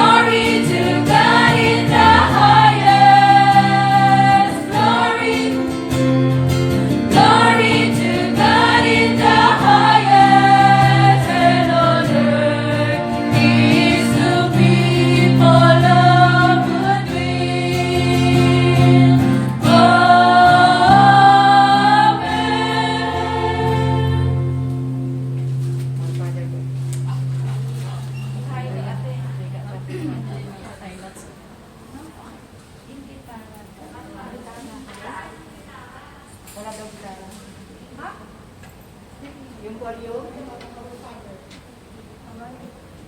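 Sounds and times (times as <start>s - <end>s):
church choir singing a hymn: 0.0s - 25.3s
held low accompaniment notes: 0.0s - 31.3s.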